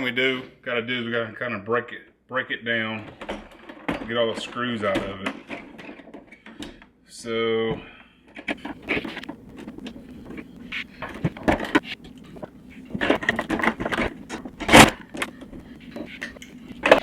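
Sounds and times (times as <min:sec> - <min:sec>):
clicks scrapes and knocks: 0:08.3 - 0:17.0
screwdriver and plastic parts handled: 0:08.4 - 0:17.0.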